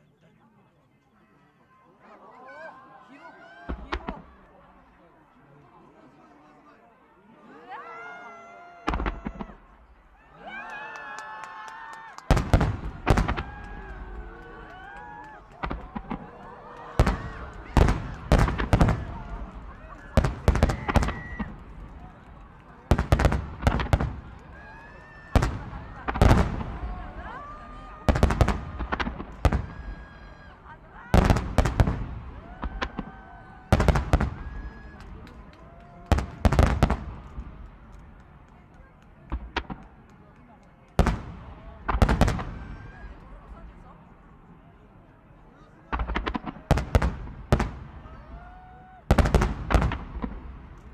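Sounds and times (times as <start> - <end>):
fireworks small cracks: 8.7 - 44.2, 45.8 - 50.9
fireworks loud bangs: 8.8 - 9.8, 12.3 - 35.3, 36.0 - 38.0, 41.0 - 43.2, 45.8 - 48.4, 49.0 - 50.9.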